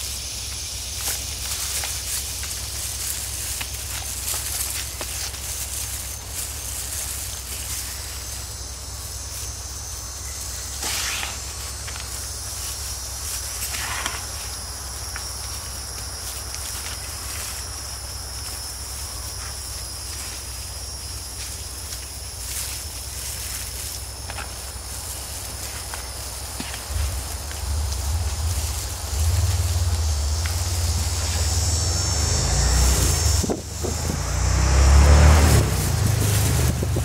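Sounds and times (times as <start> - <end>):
insects droning: 0.0 - 37.0
rustling scrapes: 10.7 - 14.5.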